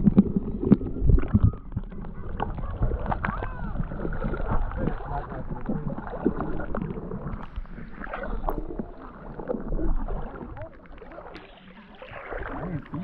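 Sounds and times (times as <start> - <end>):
wind rumble on microphone: 0.0 - 8.9
river water sloshing and splashing: 0.0 - 13.0.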